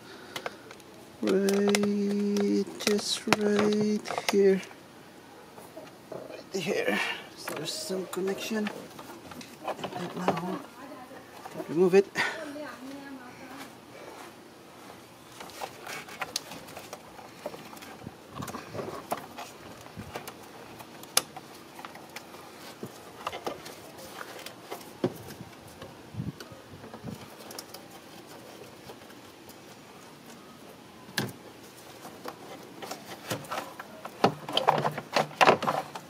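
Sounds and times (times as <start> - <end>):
clicks and knocks of hand work: 32.1 - 36.0.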